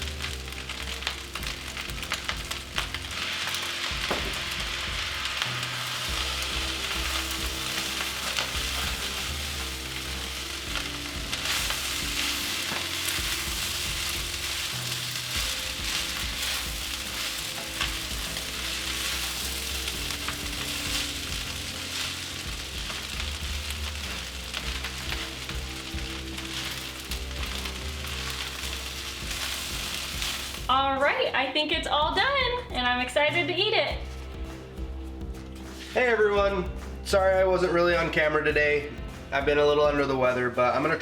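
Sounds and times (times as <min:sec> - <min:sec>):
rice sizzling in a pan: 0:00.0 - 0:31.2.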